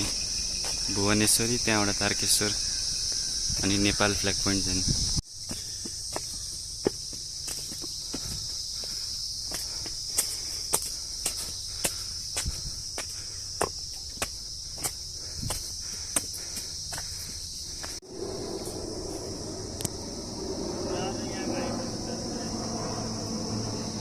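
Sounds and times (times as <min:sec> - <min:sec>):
footsteps crunching on trail: 0:00.0 - 0:01.0, 0:05.1 - 0:18.0
crickets droning: 0:00.0 - 0:24.0.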